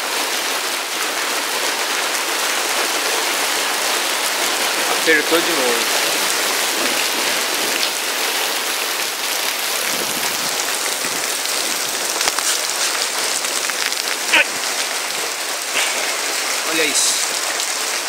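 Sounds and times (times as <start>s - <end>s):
hail and rain pelting down: 0.0s - 18.0s
hailstones striking hard surfaces: 9.5s - 17.5s.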